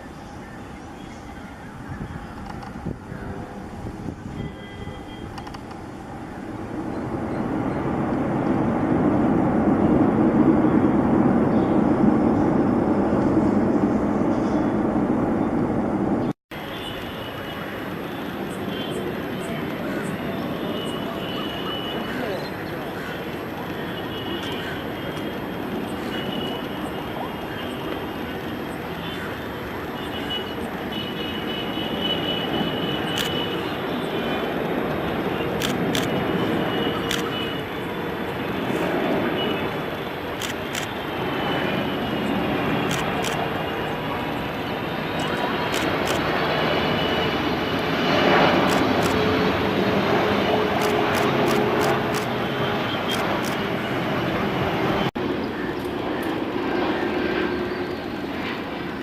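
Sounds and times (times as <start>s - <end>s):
jet engines rumbling: 0.0s - 59.0s.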